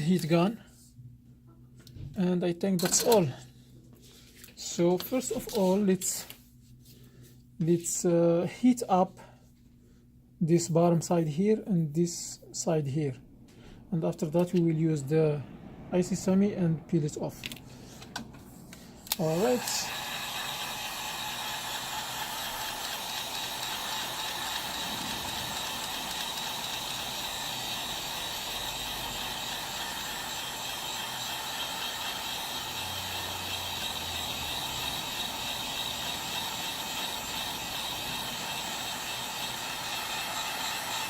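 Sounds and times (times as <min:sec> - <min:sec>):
heat gun blowing air: 0:18.8 - 0:41.0.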